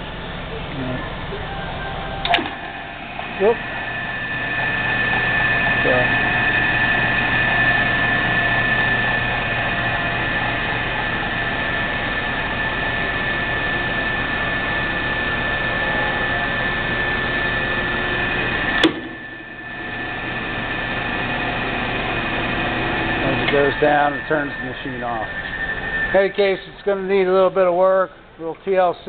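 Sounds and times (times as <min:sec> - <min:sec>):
bandsaw motor humming and whining: 0:00.0 - 0:28.9
shut-off switch click: 0:02.2 - 0:02.7, 0:18.8 - 0:19.2.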